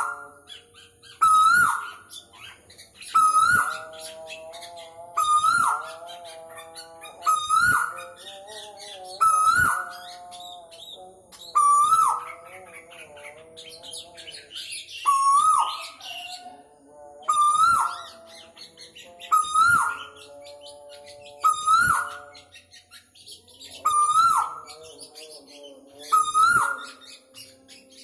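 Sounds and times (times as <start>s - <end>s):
birds twittering: 0.0s - 28.0s
koel calling: 3.1s - 10.2s, 11.5s - 13.5s, 17.3s - 20.3s, 21.3s - 22.6s, 23.8s - 25.0s, 26.0s - 27.3s.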